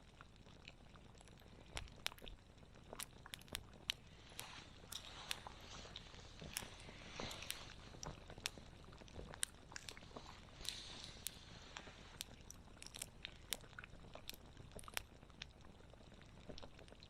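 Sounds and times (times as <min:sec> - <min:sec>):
soft hiss: 0:00.0 - 0:17.0
wood fire crackling: 0:00.0 - 0:17.0.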